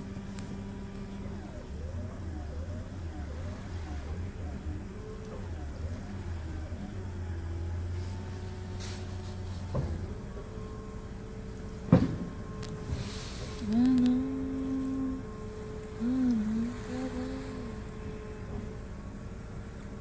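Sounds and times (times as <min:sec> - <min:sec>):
low droning hum: 0:00.0 - 0:20.0
wavering gliding tones: 0:13.5 - 0:18.7.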